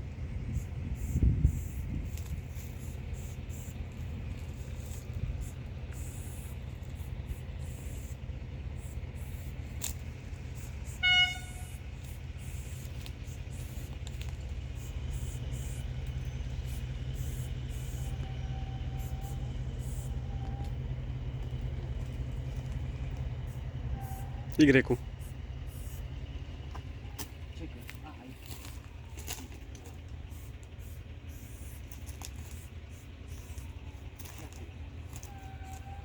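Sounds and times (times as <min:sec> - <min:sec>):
low train rumble: 0:00.0 - 0:36.0
train horn toot: 0:10.9 - 0:12.0, 0:18.0 - 0:19.5, 0:23.9 - 0:24.6, 0:35.2 - 0:36.0.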